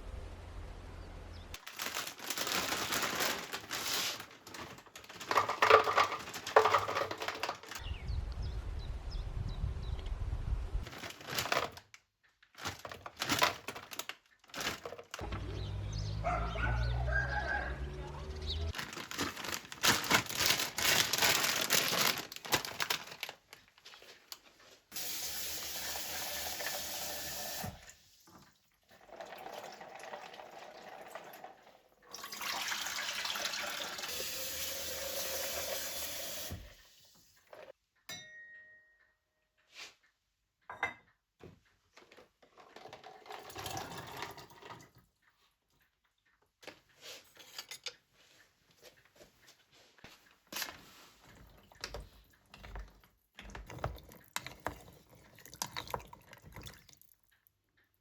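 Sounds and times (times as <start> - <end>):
water running: 24.9 - 37.5, 51.2 - 57.3.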